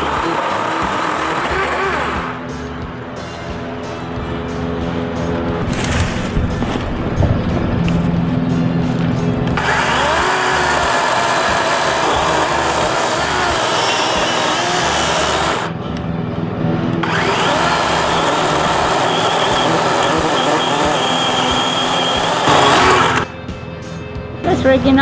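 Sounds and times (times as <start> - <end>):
battery chainsaw cutting brush: 0.0 - 2.4, 9.6 - 15.7, 17.0 - 23.3
background music with steady beat: 2.3 - 5.6, 23.2 - 25.0.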